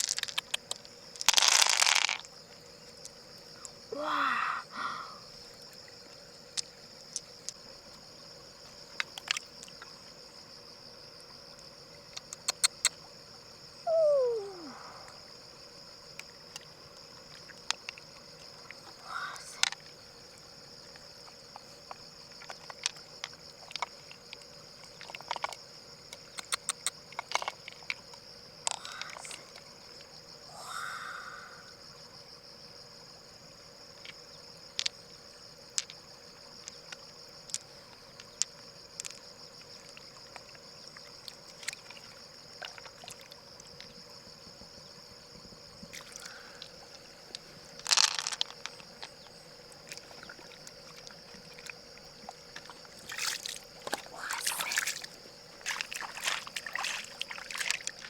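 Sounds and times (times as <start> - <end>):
high-pitched insect drone: 53.0 - 58.0.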